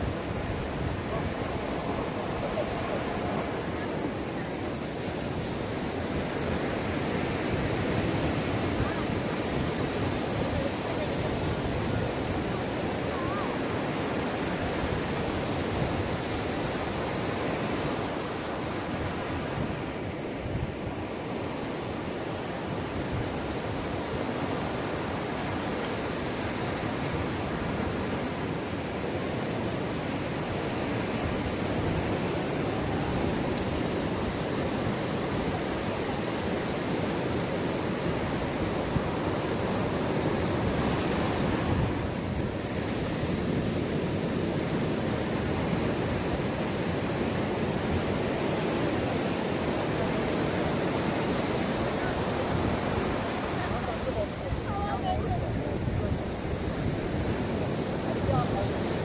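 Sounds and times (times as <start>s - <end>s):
ocean waves breaking: 0.0s - 59.0s
wind on microphone: 0.0s - 59.0s.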